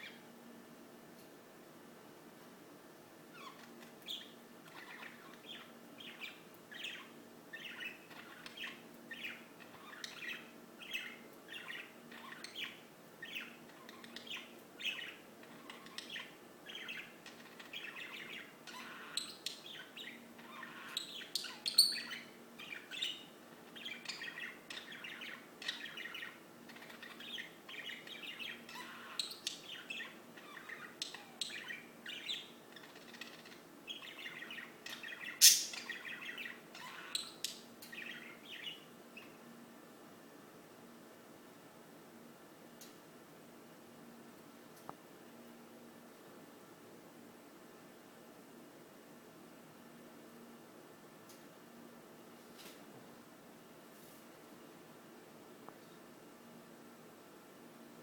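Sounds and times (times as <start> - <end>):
birds chirping and singing: 3.4 - 39.4.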